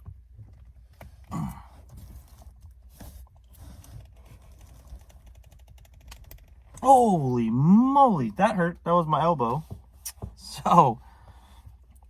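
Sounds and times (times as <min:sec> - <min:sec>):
person grunting: 0:01.3 - 0:01.7, 0:06.8 - 0:07.8.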